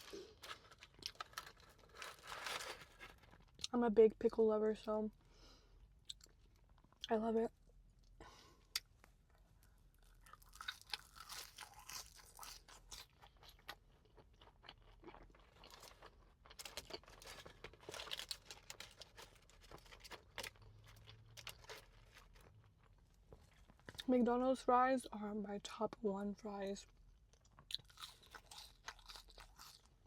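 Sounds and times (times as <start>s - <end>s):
person chewing food: 8.0s - 18.8s, 27.2s - 30.0s.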